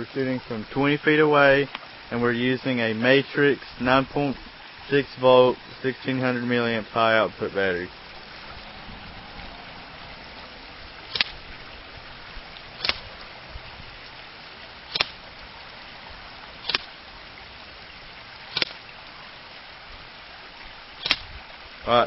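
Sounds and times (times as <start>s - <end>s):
steady background hiss: 0.0s - 22.0s
airsoft gun firing pops: 11.1s - 11.4s, 12.8s - 13.1s, 14.9s - 15.2s, 16.6s - 16.9s, 18.5s - 18.8s, 21.0s - 21.3s.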